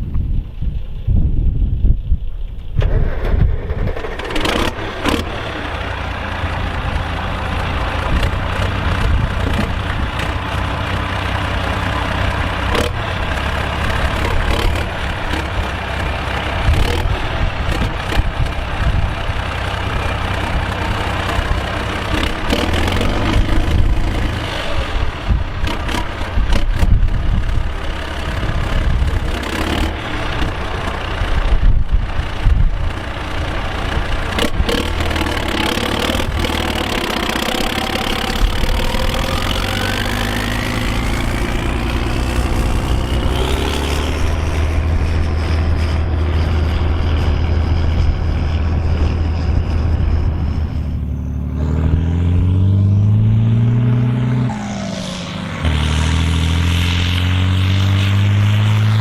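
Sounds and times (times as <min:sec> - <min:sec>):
tractor diesel engine under load: 0:00.0 - 0:59.0
rising whine: 0:34.9 - 0:59.0.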